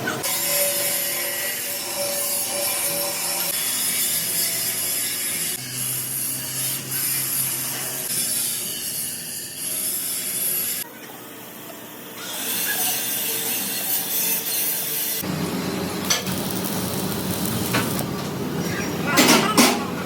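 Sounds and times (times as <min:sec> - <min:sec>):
power tool rasping hiss: 0:12.4 - 0:18.2
low machine hum: 0:15.2 - 0:19.2.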